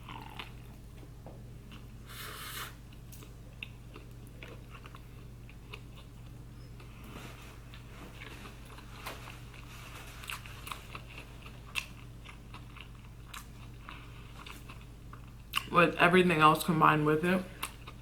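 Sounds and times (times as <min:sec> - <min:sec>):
close chewing clicks and crunches: 0:00.0 - 0:00.8, 0:02.9 - 0:15.7, 0:17.6 - 0:18.0.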